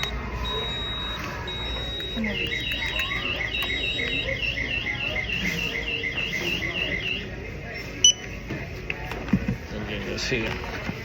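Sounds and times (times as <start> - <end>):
card terminal beeping: 0.0 - 8.5.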